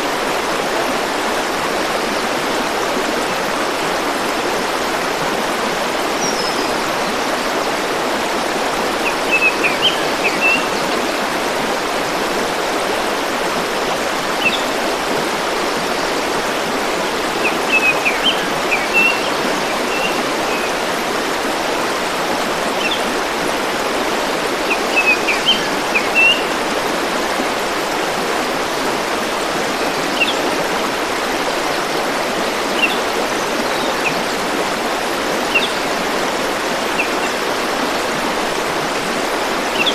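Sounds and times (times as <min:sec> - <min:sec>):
stream rushing: 0:00.0 - 0:39.9.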